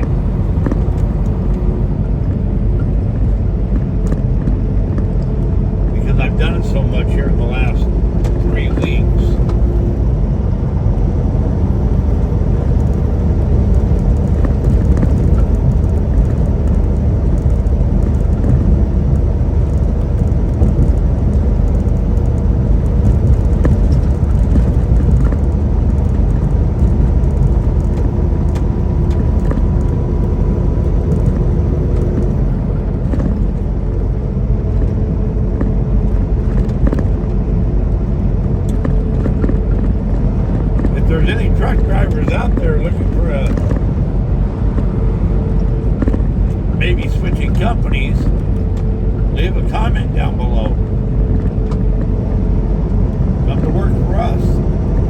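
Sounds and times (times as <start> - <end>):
road noise: 0.0 - 55.0
truck engine drone: 0.0 - 55.0.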